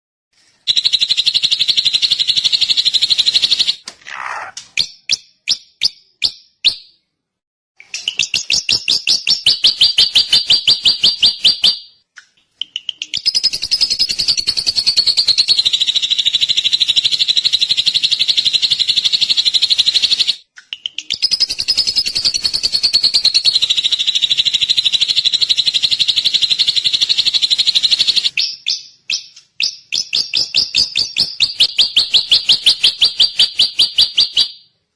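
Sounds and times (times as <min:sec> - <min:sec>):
bird singing rapid chattering notes: 0:07.8 - 0:11.9, 0:12.6 - 0:34.6.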